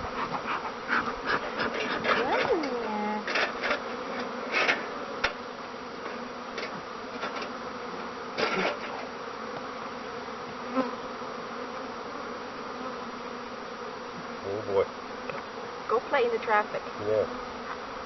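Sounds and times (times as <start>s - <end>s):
bees buzzing: 0.0s - 18.0s
short clicks from hive: 1.4s - 7.6s.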